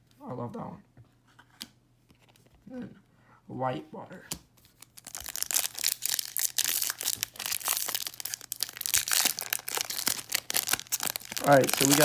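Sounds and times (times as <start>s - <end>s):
card pack wrapper crinkling: 4.7s - 12.0s.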